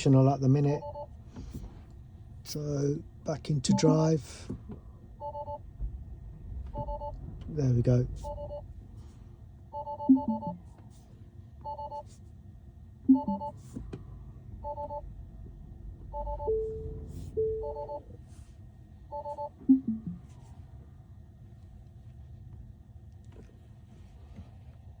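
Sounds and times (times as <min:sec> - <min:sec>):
two-note warning chime beeping: 0:03.7 - 0:04.0, 0:10.1 - 0:10.6, 0:13.1 - 0:13.5.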